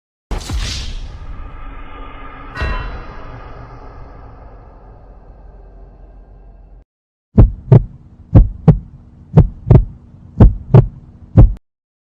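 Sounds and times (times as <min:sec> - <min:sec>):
heartbeat thumps: 0:07.3 - 0:11.6.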